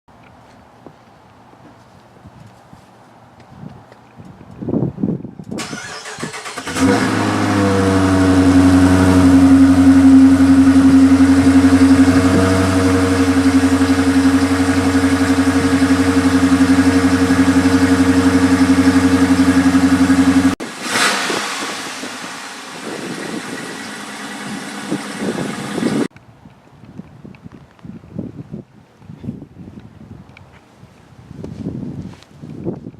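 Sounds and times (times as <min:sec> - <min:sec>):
engine and exhaust noise: 0:00.1 - 0:27.8
car engine cranking and starting: 0:05.6 - 0:26.1
car engine idling: 0:05.8 - 0:26.1.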